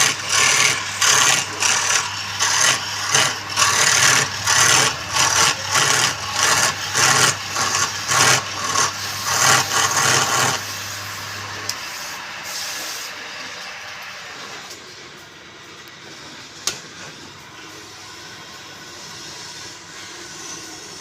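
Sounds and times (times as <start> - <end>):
tool rasping against turning wood: 0.0 - 10.9
wood lathe motor humming: 0.0 - 12.2.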